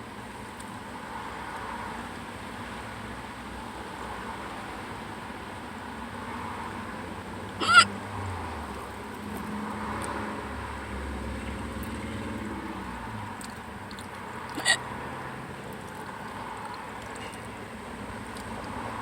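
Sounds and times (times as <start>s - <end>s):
person hiccuping: 7.6s - 7.9s, 14.5s - 14.8s.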